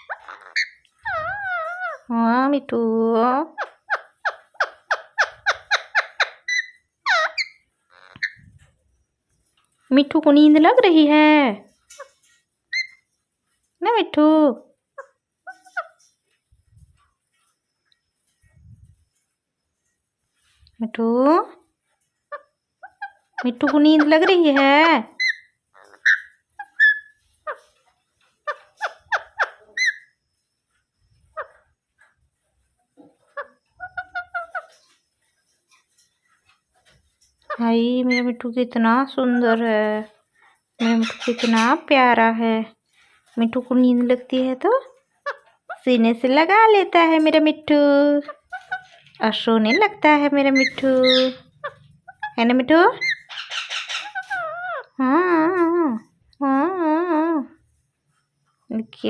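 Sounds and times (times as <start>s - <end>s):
parrot chirping: 0.0s - 2.2s, 3.5s - 8.8s, 11.7s - 13.2s, 14.9s - 18.4s, 21.8s - 56.2s.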